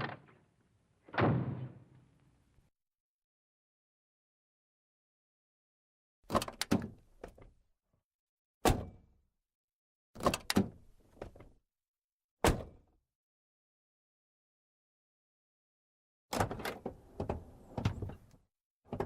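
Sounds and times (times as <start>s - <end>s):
sharp bang: 1.1s - 2.0s.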